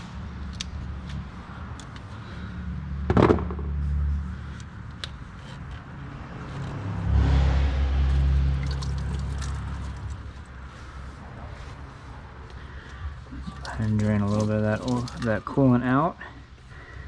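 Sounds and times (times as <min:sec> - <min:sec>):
coolant pouring into a can: 0:08.1 - 0:10.3, 0:13.4 - 0:15.5.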